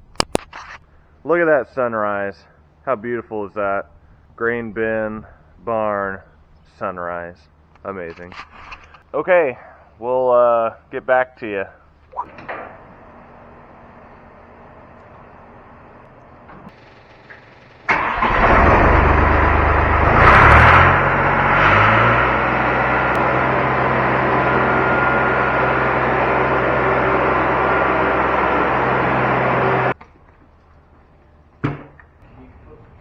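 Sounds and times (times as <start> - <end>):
skid loader engine starting and revving: 12.3 - 30.0.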